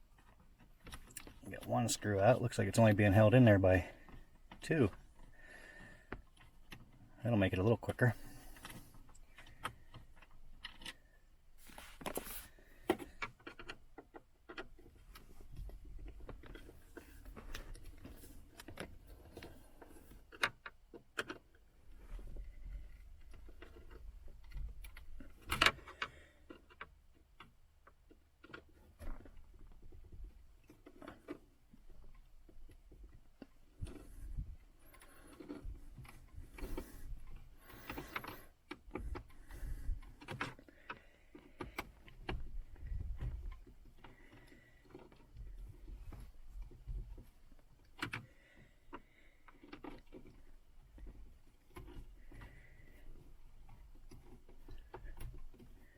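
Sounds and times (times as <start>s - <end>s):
hand tools clicking and scraping: 33.7s - 55.9s.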